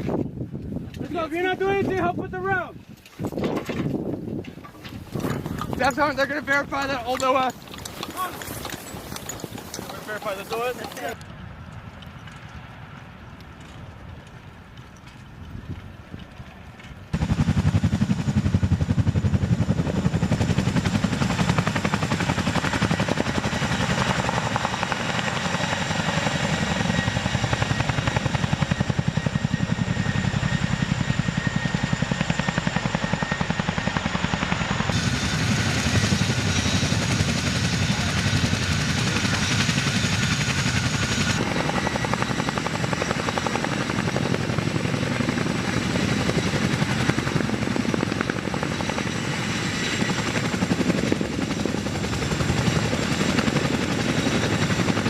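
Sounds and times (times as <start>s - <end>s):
helicopter rotor beat: 0.2s - 11.2s, 17.0s - 55.0s
high turbine whine: 15.6s - 55.0s.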